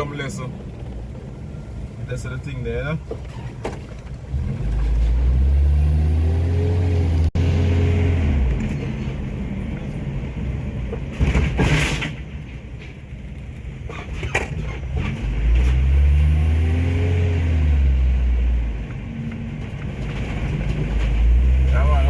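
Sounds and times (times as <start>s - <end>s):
car engine: 0.0s - 22.0s
road noise inside car: 0.0s - 22.0s.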